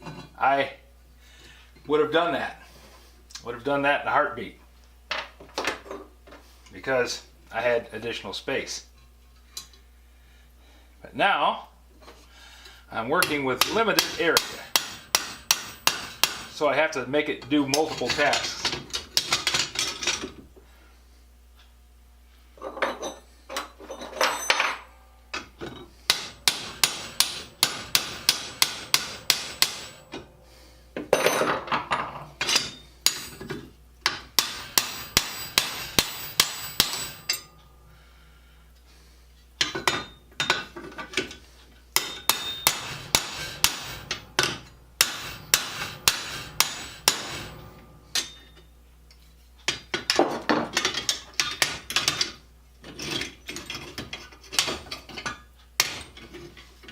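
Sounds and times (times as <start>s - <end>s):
hammer blows on steel rivets: 13.3s - 16.6s, 26.1s - 30.3s, 32.4s - 37.7s, 42.0s - 48.6s.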